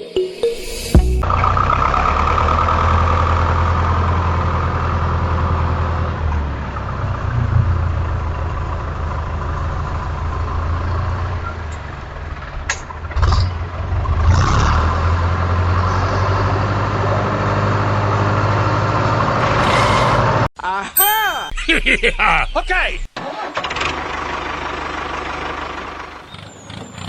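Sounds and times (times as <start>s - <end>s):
engine humming: 0.9s - 12.6s, 23.5s - 27.0s.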